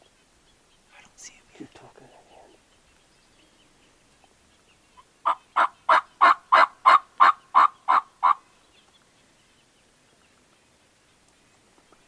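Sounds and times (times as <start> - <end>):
turkey call yelps: 5.2 - 8.4.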